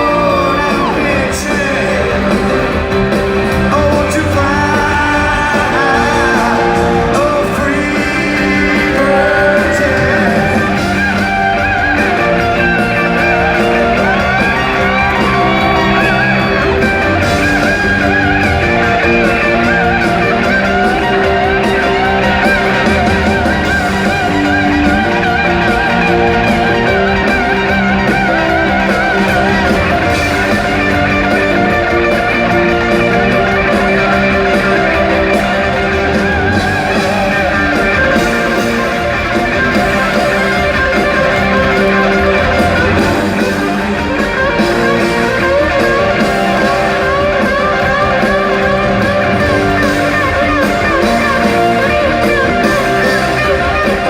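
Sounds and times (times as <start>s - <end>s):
live rock band playing: 0.0s - 54.0s.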